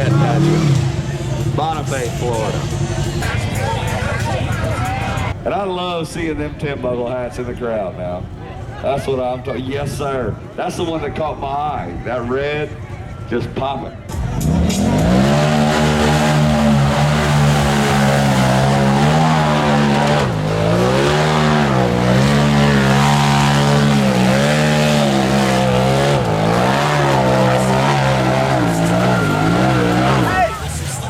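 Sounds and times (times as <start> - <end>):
truck engine revving hard: 0.0 - 5.4, 14.1 - 31.0.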